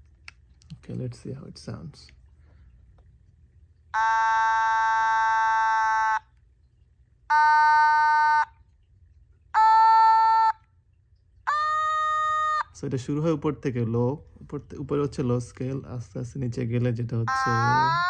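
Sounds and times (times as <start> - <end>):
electronic toy synthesizer notes: 4.0 - 6.2, 7.3 - 8.5, 9.6 - 10.6, 11.5 - 12.7, 17.3 - 18.0.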